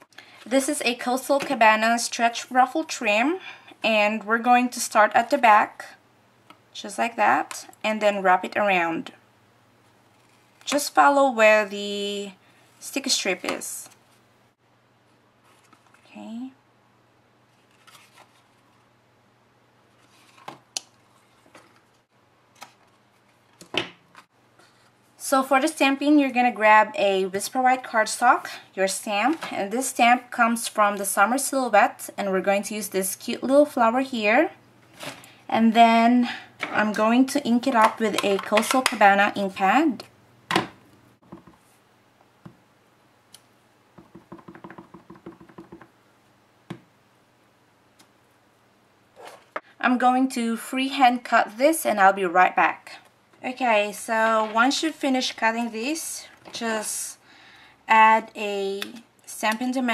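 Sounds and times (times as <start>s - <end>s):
faint steady hum: 0.0s - 59.9s
paper rustling: 17.5s - 18.9s
rubber stamp tapping ink pad: 44.0s - 45.9s.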